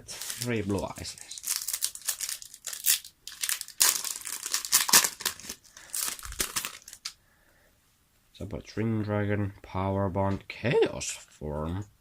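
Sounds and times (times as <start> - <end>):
foil wrapper crinkling: 0.0 - 7.1.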